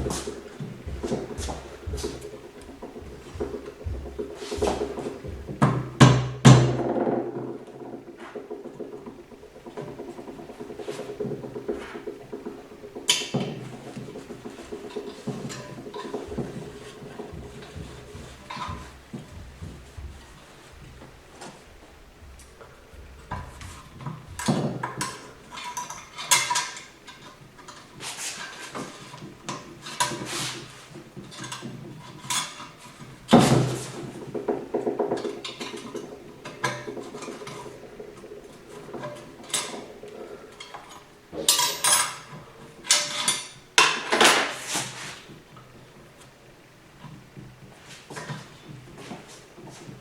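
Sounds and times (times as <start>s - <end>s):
metal parts clinking and knocking: 40.6s - 44.4s.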